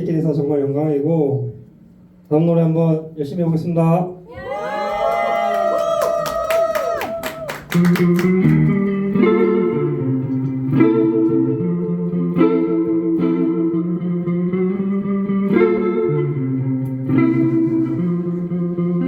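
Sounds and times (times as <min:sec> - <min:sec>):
electric guitar chords ringing: 0:07.8 - 0:19.0.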